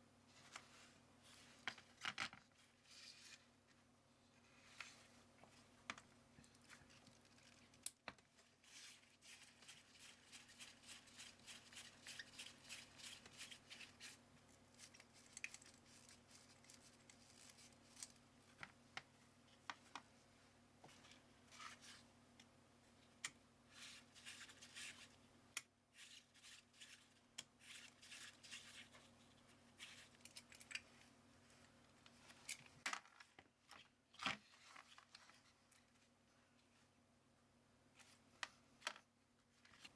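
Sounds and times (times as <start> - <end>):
scraping and rubbing of small parts: 8.4 - 18.8, 23.7 - 25.2, 25.9 - 33.9.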